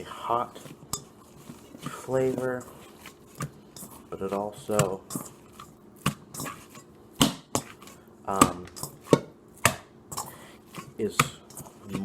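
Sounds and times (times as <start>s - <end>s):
hands slapping ground meat: 4.3s - 12.0s.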